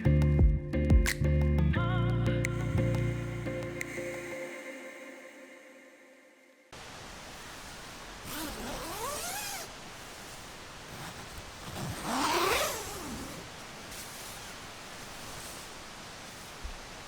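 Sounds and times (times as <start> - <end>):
steady background hiss: 6.8 - 17.0.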